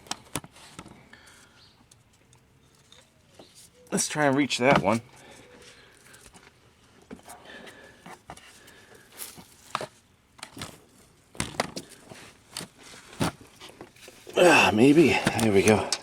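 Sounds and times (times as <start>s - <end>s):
hand clicking plastic fasteners: 15.1s - 16.0s.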